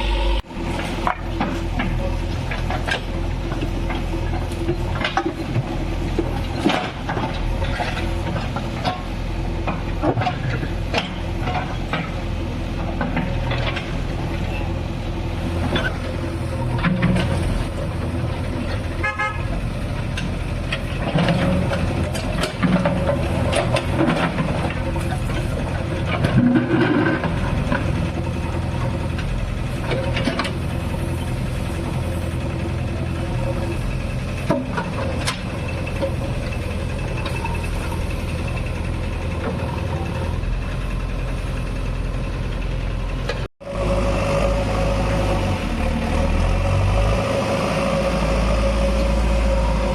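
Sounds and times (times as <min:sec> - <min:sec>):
brief horn-like tone: 0:00.0 - 0:00.4
diesel engine running: 0:00.0 - 0:49.9
knocks and clanks: 0:18.6 - 0:28.2.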